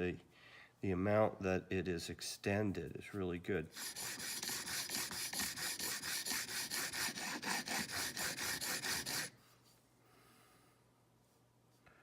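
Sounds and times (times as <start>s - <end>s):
chisel rubbing on sharpening stone: 3.7s - 9.3s.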